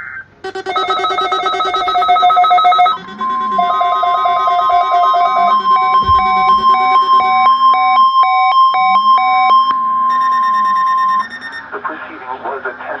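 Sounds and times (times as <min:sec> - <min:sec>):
electronic tones beeping: 0:00.4 - 0:11.7
ringing pulse of stacked tones: 0:00.4 - 0:11.7
steady warning alarm tone: 0:00.4 - 0:11.7.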